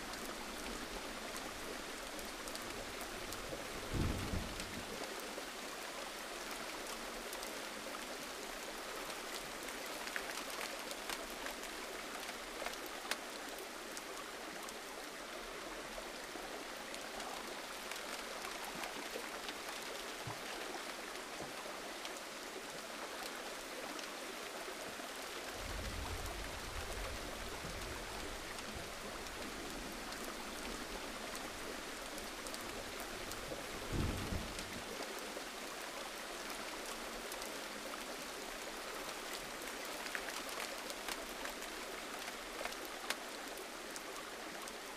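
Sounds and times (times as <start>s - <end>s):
gentle rain: 0.0s - 44.9s
raindrops ticking: 39.3s - 44.8s.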